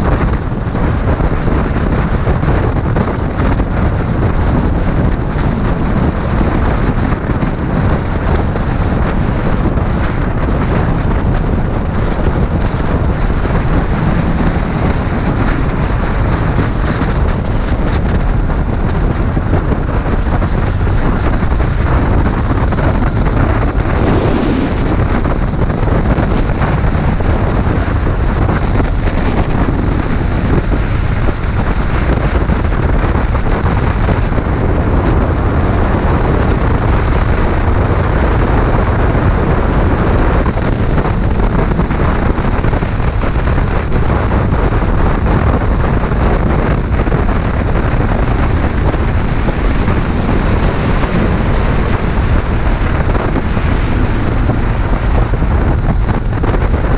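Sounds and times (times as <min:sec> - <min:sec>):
road noise: 0:00.0 - 0:56.9
wind buffeting microphone: 0:00.0 - 0:56.9
motorcycle engine: 0:03.0 - 0:34.3, 0:46.4 - 0:56.9.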